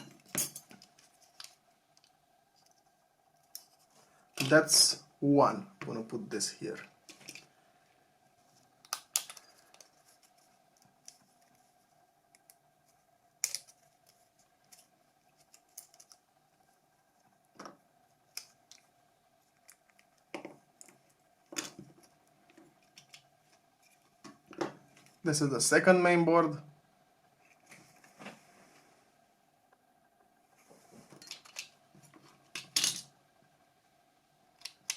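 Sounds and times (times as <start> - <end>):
faint steady hum: 0.0 - 34.9
small parts clicking and tapping: 8.8 - 11.6, 13.4 - 16.3, 19.5 - 25.2, 31.1 - 33.1, 34.5 - 34.9.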